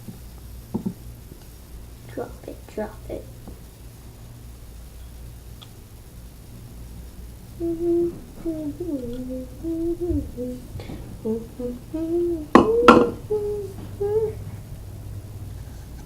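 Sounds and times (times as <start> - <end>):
person humming: 7.6 - 14.6.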